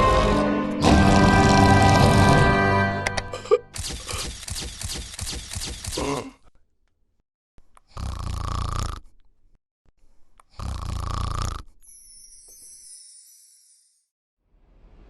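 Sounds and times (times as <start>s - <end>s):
person snoring: 7.9s - 9.1s, 10.5s - 11.8s.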